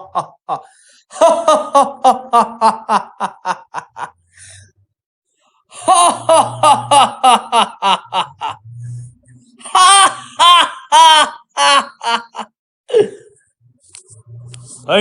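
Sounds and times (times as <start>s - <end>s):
man laughing heartily: 0.0s - 4.2s, 5.7s - 8.8s, 9.6s - 13.4s.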